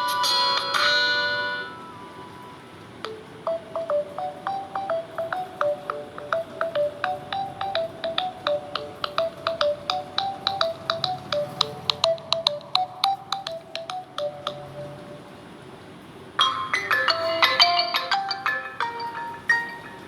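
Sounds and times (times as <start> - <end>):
electronic ringtone melody: 0.0 - 15.4, 16.4 - 20.0.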